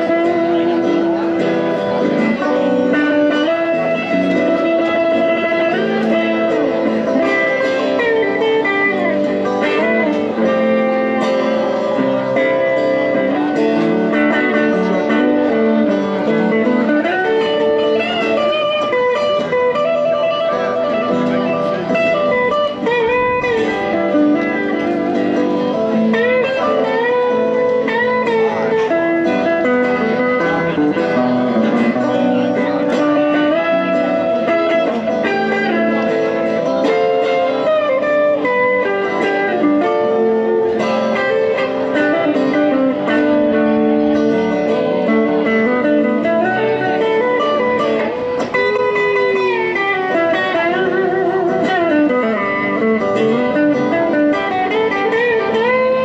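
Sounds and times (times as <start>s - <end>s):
electric guitar blues melody: 0.0s - 56.0s.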